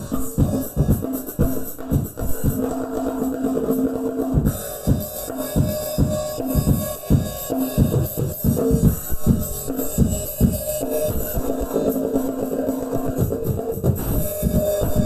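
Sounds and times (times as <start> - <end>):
kick drum thumping: 0.0 - 2.7, 4.4 - 11.6
drum kit playing a groove: 0.0 - 15.0
music with pitched notes: 0.0 - 15.0.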